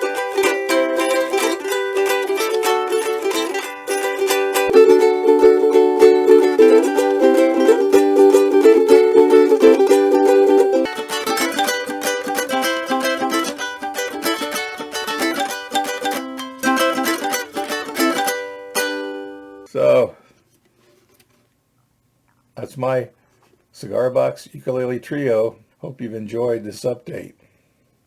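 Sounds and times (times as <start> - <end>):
ukulele chords strummed: 0.0 - 19.7.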